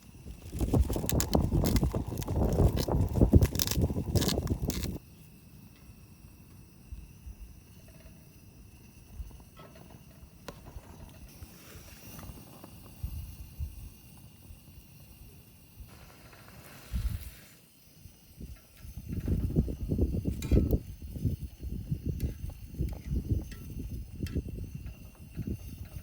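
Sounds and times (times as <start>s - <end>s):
wind buffeting microphone: 0.1s - 5.0s, 18.4s - 26.0s.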